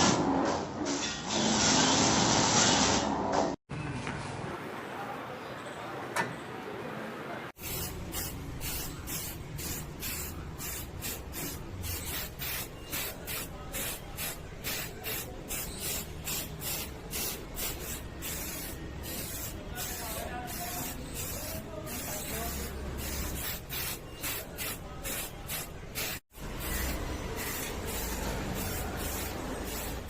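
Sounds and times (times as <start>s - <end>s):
spray paint can hissing: 7.6s - 30.0s.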